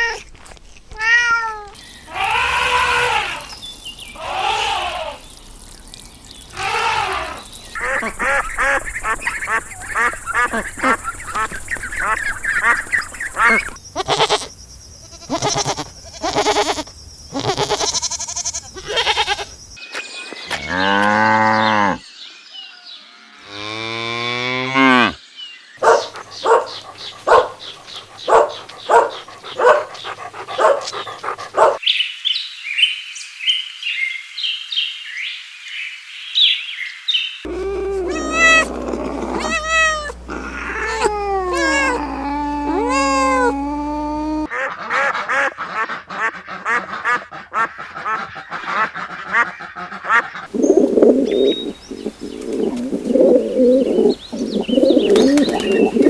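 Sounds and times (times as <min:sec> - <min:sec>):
farm animal calls: 0:02.0 - 0:05.2, 0:06.5 - 0:19.6, 0:25.8 - 0:31.8, 0:37.5 - 0:56.0
cattle mooing: 0:23.5 - 0:25.2, 0:28.2 - 0:31.8, 0:37.5 - 0:44.5
high chirping: 0:25.8 - 0:31.8, 0:50.5 - 0:56.0.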